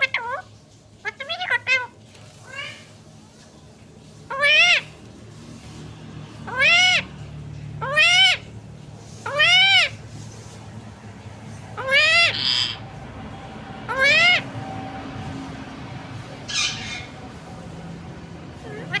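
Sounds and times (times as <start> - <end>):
parrot meow-like calls: 0.0 - 2.9, 4.3 - 5.0, 6.4 - 7.1, 7.8 - 8.5, 9.2 - 10.0, 11.7 - 12.8, 13.9 - 14.5, 16.4 - 17.1, 18.8 - 19.0.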